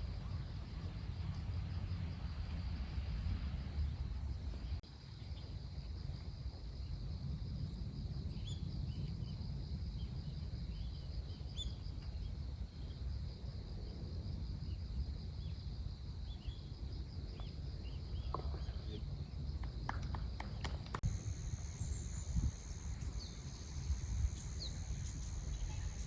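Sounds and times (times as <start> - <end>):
wind rumbling on microphone: 0.0 - 26.0
insects trilling: 6.8 - 26.0.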